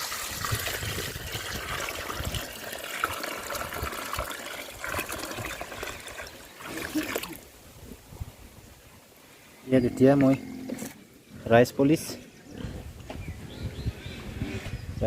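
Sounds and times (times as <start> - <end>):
water pouring into feed: 0.0 - 7.5.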